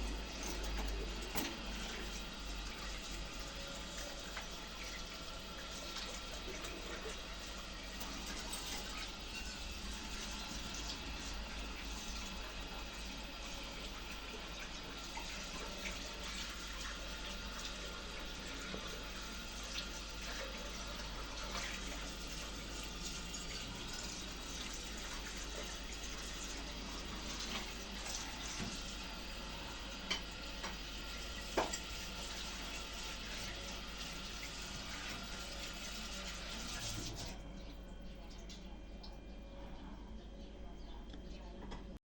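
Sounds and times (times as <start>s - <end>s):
tap water running into sink: 0.1s - 37.4s.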